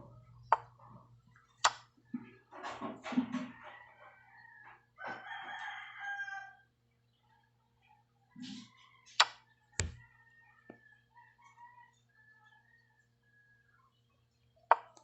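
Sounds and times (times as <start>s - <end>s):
rooster crowing: 3.6s - 6.7s, 9.8s - 13.5s.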